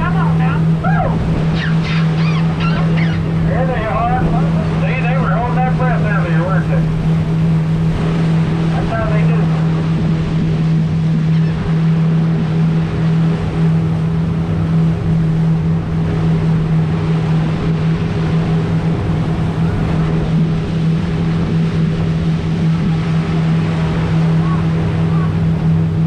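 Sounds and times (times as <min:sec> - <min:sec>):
boat engine humming: 0:00.0 - 0:26.0
wind and water rushing: 0:00.0 - 0:26.0.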